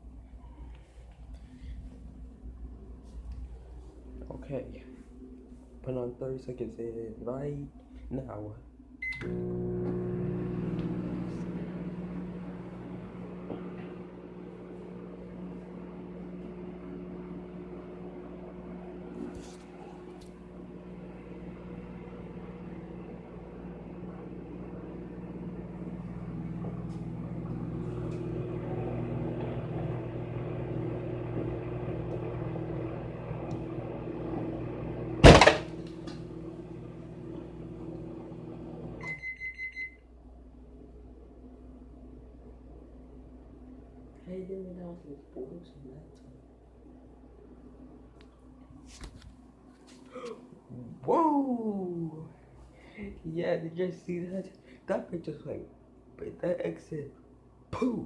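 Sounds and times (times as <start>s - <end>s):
microwave oven humming: 8.8s - 45.6s.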